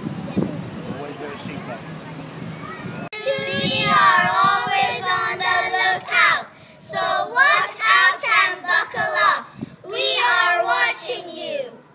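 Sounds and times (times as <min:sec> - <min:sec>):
children singing: 0:03.2 - 0:11.7.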